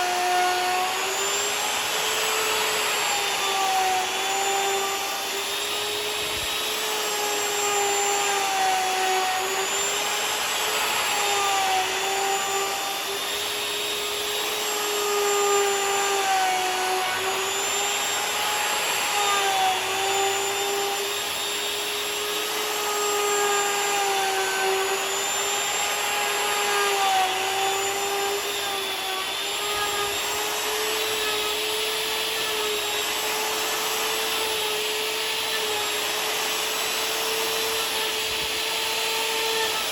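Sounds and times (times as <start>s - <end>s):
hiss of cutting wood: 0.0s - 39.9s
router motor whine: 0.0s - 39.9s.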